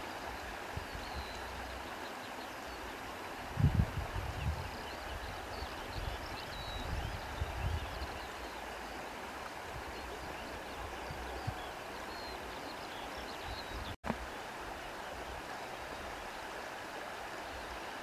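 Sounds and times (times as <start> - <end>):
wind buffeting microphone: 3.4 - 8.3
wind rustling grass: 3.4 - 12.0.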